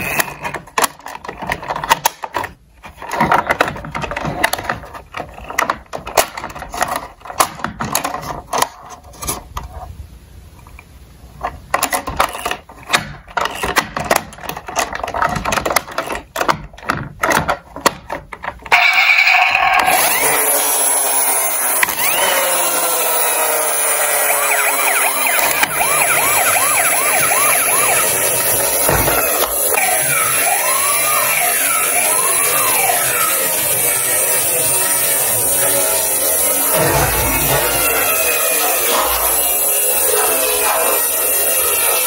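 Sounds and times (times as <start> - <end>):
toy cars clicking and clattering: 0.0 - 9.8, 11.4 - 42.0
toy electronic siren: 18.7 - 42.0.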